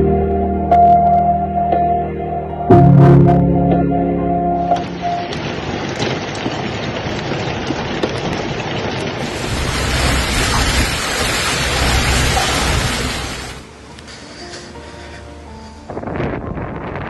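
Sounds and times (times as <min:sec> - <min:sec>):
low rumble: 0:02.7 - 0:06.8
heavy rain and hail: 0:04.7 - 0:16.3.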